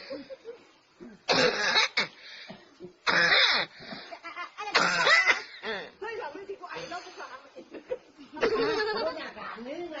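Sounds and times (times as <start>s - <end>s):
person coughing: 1.3s - 2.1s, 4.7s - 5.8s.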